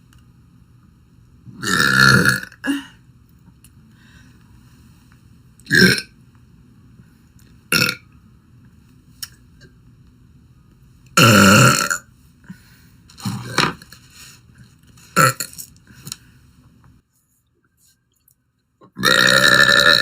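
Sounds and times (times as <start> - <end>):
woman burping: 1.6 - 2.9, 11.2 - 12.0, 19.0 - 20.0.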